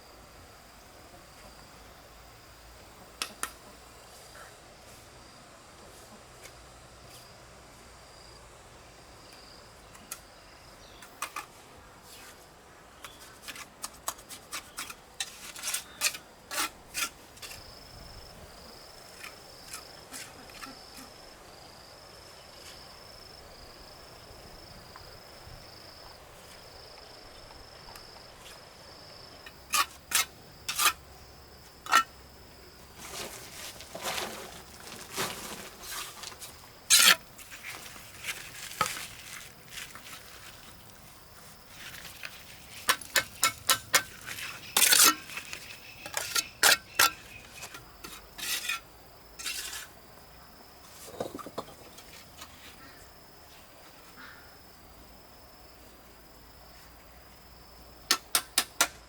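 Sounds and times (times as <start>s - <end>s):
high insect drone: 17.4s - 59.0s
tool scraping: 29.7s - 31.0s, 33.0s - 40.3s, 41.8s - 50.0s.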